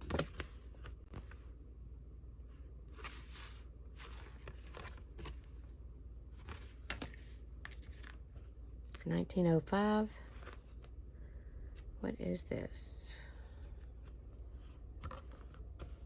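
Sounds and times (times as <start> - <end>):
low room hum: 0.0 - 16.0
paper cards rustling: 3.0 - 5.6, 6.4 - 8.5.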